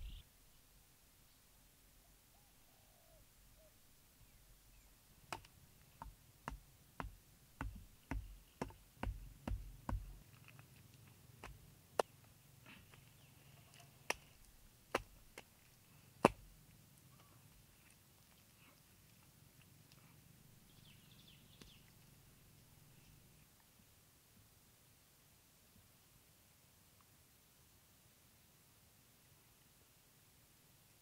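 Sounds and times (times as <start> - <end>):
sharp knocks with dull thuds: 5.3 - 10.2, 16.2 - 16.5.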